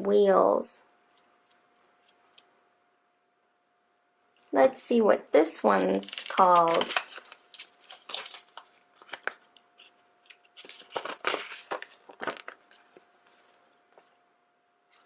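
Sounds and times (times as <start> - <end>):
paper and plastic packaging rustling: 6.0 - 14.2.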